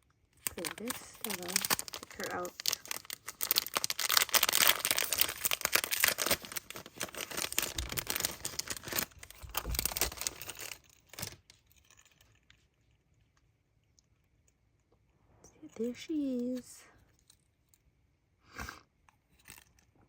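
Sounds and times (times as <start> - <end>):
plastic packaging crinkling and tearing: 0.4 - 12.4.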